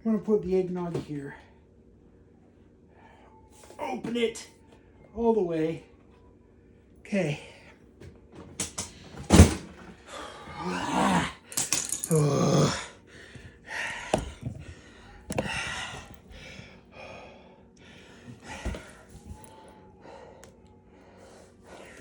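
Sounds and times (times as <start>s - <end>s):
man breathing heavily and groaning: 10.0s - 22.0s
handling noises: 13.4s - 16.6s.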